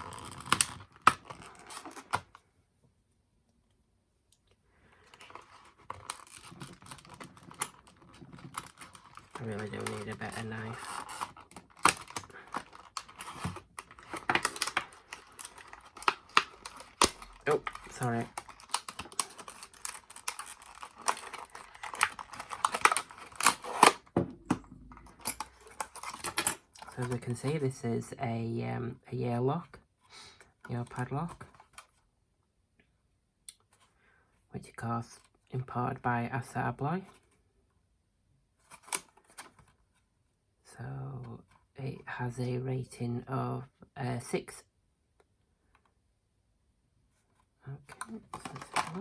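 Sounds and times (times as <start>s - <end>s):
sharp plastic cracks: 5.2s - 27.0s
knife tearing packaging: 5.3s - 24.0s.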